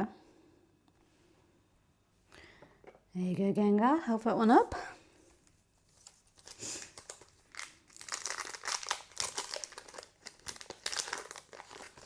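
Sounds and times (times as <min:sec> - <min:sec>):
foil wrapper crinkling: 0:05.9 - 0:12.0.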